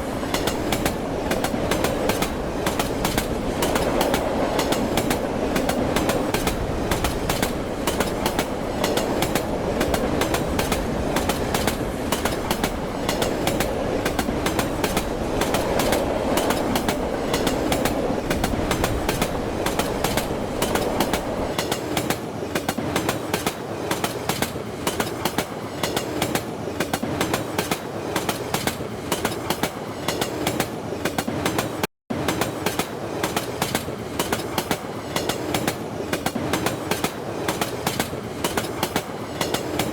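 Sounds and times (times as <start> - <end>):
heavy train rumble: 0.0 - 23.5
train wheels clattering on rails: 0.0 - 39.9.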